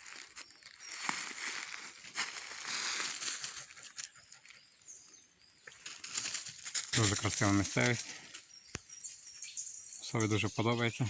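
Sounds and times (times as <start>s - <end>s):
footsteps crunching dry leaves: 0.0s - 4.1s, 5.8s - 9.2s
faint bird chirps: 0.0s - 11.0s.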